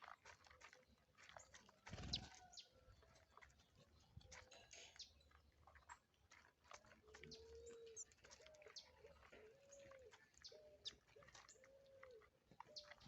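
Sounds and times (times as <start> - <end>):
small birds chirping: 0.6 - 13.0.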